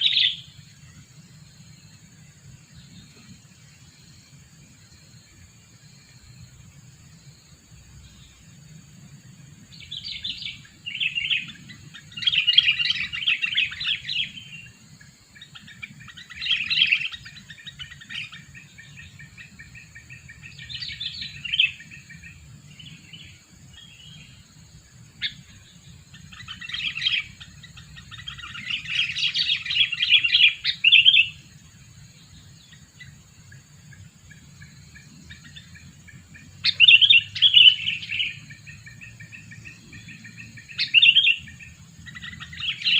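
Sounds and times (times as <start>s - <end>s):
bird rapid chirping phrases: 0.0s - 0.7s, 9.8s - 31.5s, 34.2s - 42.9s.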